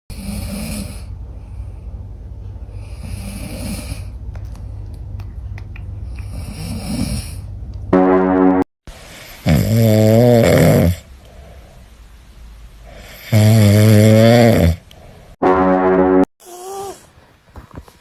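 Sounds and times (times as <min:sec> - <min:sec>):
cat snoring: 0:00.1 - 0:01.1, 0:02.8 - 0:04.2, 0:06.0 - 0:07.5, 0:09.4 - 0:11.0, 0:12.9 - 0:14.8
loud steady pitched tone: 0:07.9 - 0:08.6, 0:15.4 - 0:16.3.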